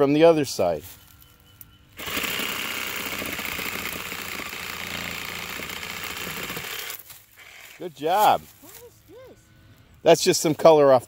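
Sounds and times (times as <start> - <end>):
power saw cutting tree trunk: 2.0 - 8.1.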